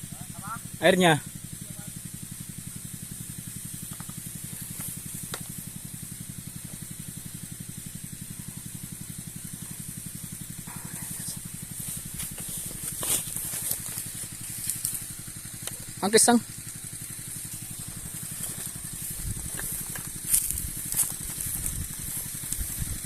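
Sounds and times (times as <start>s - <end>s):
power sprayer engine pulsing: 0.0s - 23.0s
spray hissing from nozzle: 0.0s - 23.0s.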